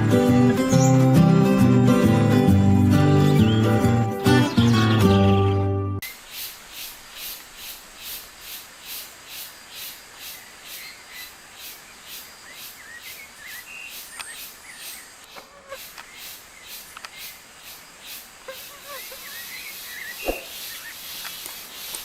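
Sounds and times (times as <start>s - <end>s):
insect chirping: 6.0s - 22.0s.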